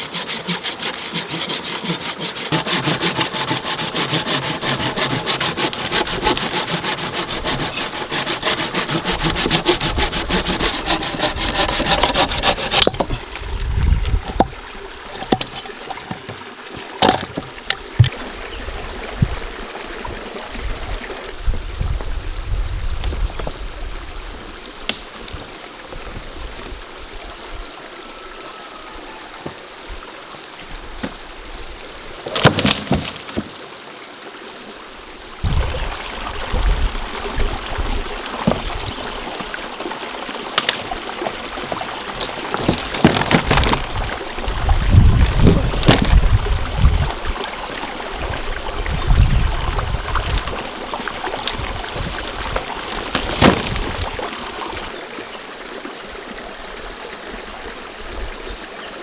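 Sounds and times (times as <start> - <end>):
water splashing and sloshing: 0.0 - 18.4, 30.6 - 33.9, 37.1 - 49.0, 49.6 - 54.9
stream water running: 0.0 - 59.0.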